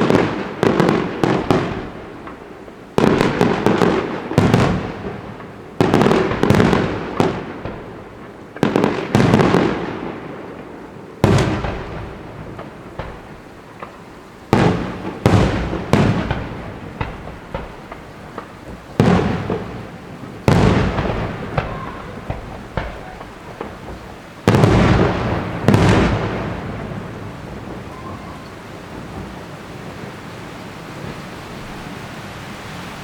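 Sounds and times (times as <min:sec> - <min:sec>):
small firework pops: 0:00.0 - 0:04.8, 0:11.2 - 0:19.8, 0:20.5 - 0:26.4
firework shell bursts echoing: 0:11.2 - 0:28.6.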